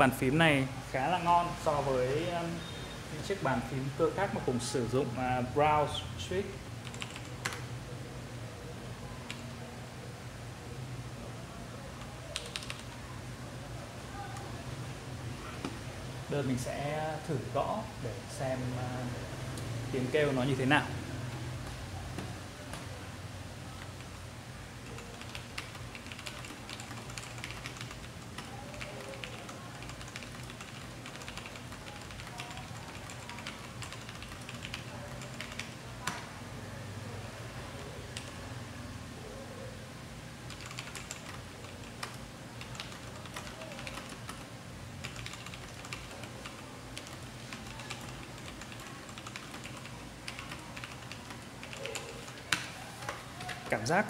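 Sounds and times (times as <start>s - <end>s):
mechanical keyboard typing: 6.8s - 7.7s, 12.0s - 13.0s, 24.8s - 35.8s, 40.5s - 52.6s.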